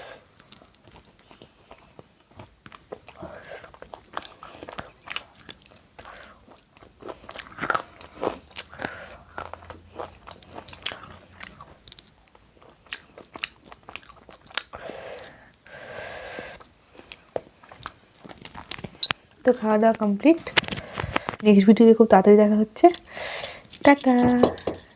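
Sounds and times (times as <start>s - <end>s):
person chewing food: 0.0s - 19.4s
crunchy bites: 2.6s - 14.8s.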